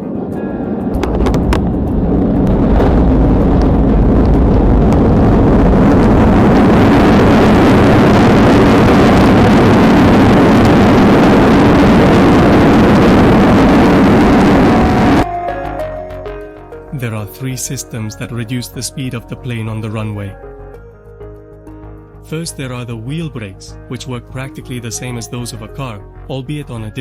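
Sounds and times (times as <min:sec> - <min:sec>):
jet engines roaring in reverse thrust: 0:00.0 - 0:15.2.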